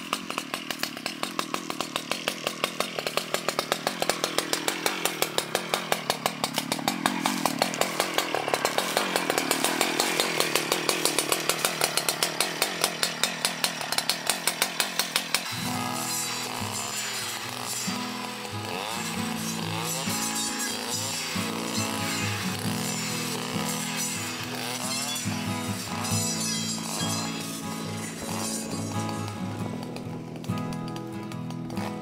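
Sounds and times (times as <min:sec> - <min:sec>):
brush cutter engine running: 0:00.0 - 0:32.0
music: 0:15.6 - 0:32.0.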